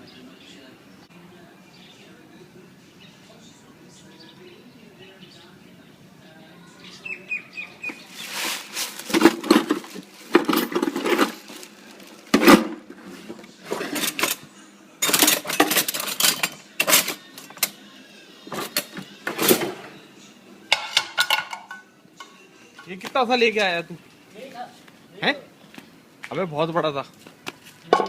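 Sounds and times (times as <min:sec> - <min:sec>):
metal utensils clinking on pot: 0:13.7 - 0:17.8, 0:20.7 - 0:23.0.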